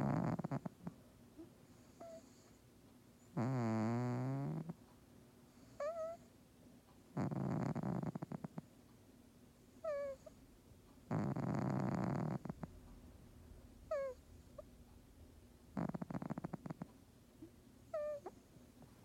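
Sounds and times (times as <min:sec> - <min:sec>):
cat snoring: 0:00.0 - 0:00.9, 0:01.8 - 0:02.6, 0:03.3 - 0:04.8, 0:05.6 - 0:06.2, 0:07.2 - 0:08.6, 0:11.1 - 0:12.6, 0:13.9 - 0:14.2, 0:15.8 - 0:16.9.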